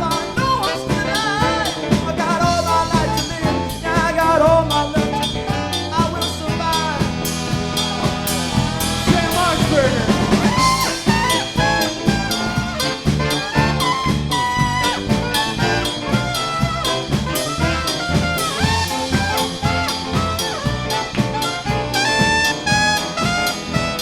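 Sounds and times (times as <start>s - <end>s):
swing band playing jazz: 0.0s - 24.0s.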